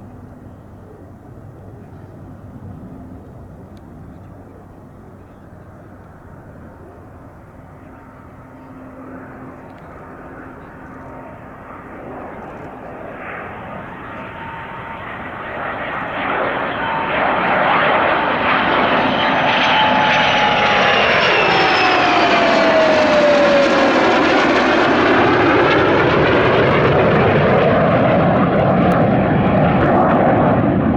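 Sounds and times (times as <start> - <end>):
aircraft flying past: 0.0 - 30.9.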